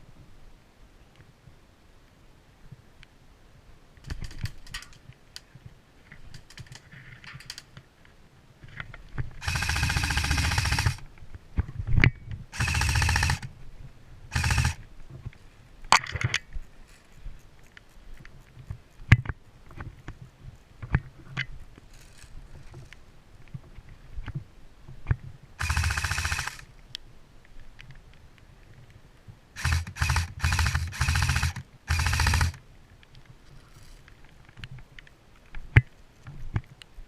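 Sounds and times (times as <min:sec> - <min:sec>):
airsoft gun full-auto bursts: 0:09.4 - 0:11.0, 0:12.5 - 0:13.5, 0:14.3 - 0:14.8, 0:25.6 - 0:26.7, 0:29.6 - 0:32.6.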